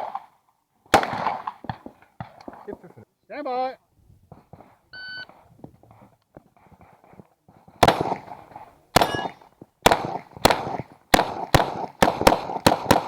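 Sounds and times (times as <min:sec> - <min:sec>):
pistol shots: 0:00.9 - 0:02.7, 0:07.8 - 0:13.0
ringing metallic clang: 0:09.0 - 0:09.4.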